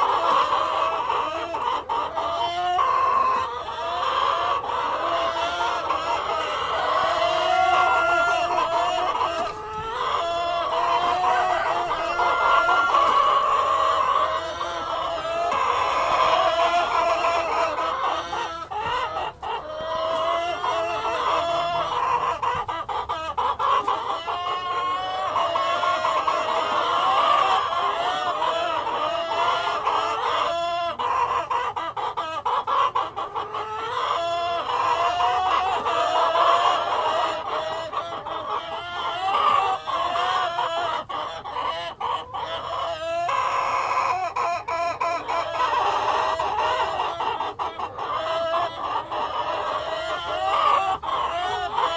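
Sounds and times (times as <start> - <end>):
hens clucking: 0.0 - 51.9
rooster crowing: 6.6 - 9.0, 9.8 - 13.7.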